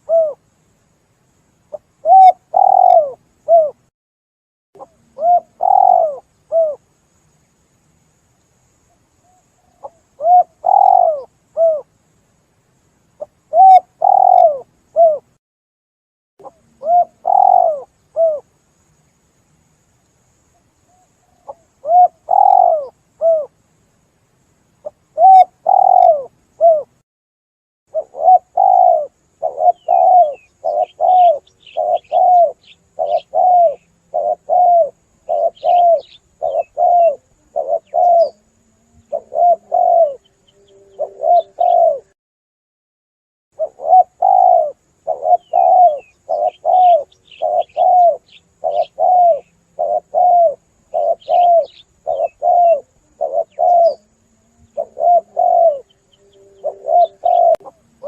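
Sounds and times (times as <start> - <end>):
dove cooing: 0.0 - 0.4, 1.7 - 3.8, 4.8 - 6.8, 9.3 - 11.9, 13.2 - 15.3, 16.4 - 18.5, 21.3 - 23.5, 24.8 - 27.0, 27.9 - 42.2, 43.6 - 58.0
small birds chirping: 1.7 - 3.9, 4.8 - 6.8, 8.4 - 11.9, 13.1 - 15.2, 16.4 - 18.4, 20.0 - 23.5, 24.8 - 27.0, 27.9 - 42.1, 43.6 - 58.0.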